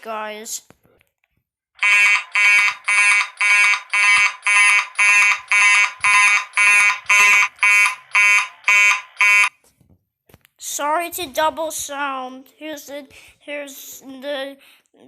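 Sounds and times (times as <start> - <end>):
fire alarm horn pulsing: 1.8 - 9.5.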